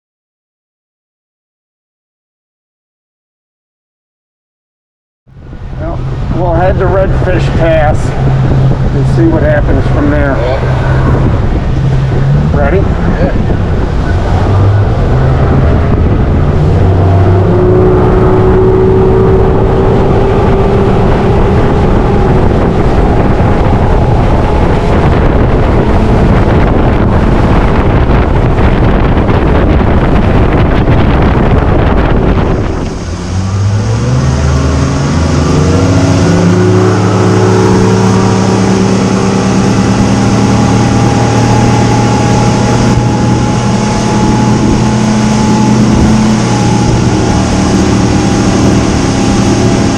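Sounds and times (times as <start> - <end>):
motorboat engine running: 5.3 - 49.9
water noise: 5.3 - 49.9
wind noise: 5.3 - 49.9.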